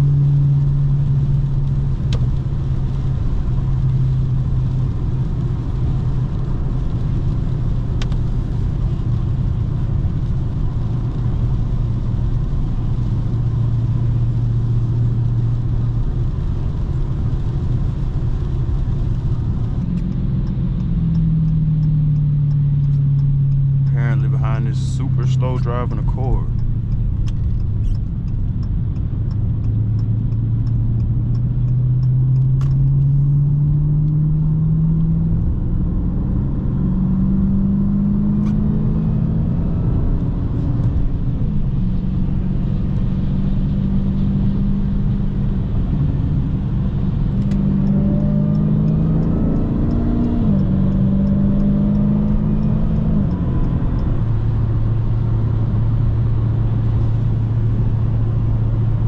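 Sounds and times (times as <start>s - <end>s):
car engine revving through gears: 16.6s - 59.0s.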